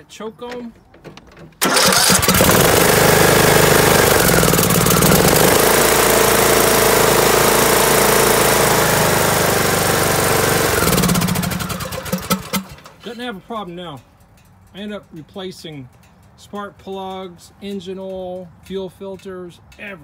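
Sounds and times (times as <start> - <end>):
mower engine starting and running: 1.5 - 13.2.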